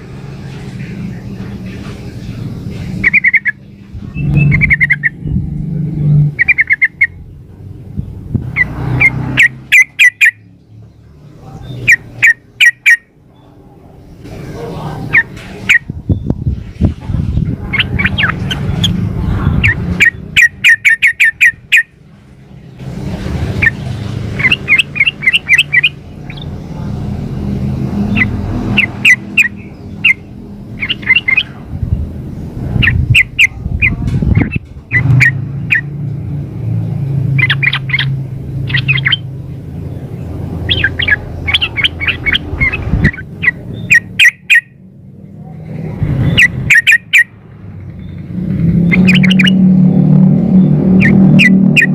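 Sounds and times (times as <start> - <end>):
bird chattering calls: 3.0 - 5.4, 6.3 - 7.4, 8.5 - 10.5, 11.6 - 13.1, 17.7 - 19.0, 19.6 - 22.0, 23.6 - 26.6, 28.0 - 31.6, 32.7 - 35.9, 37.3 - 39.4, 40.2 - 44.8, 46.2 - 47.4, 48.0 - 49.6.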